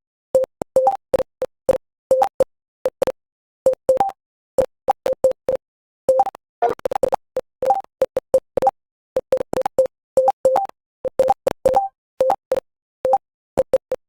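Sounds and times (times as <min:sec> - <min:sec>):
short electronic keystroke beeps: 0:03.7 - 0:07.9, 0:08.6 - 0:14.0.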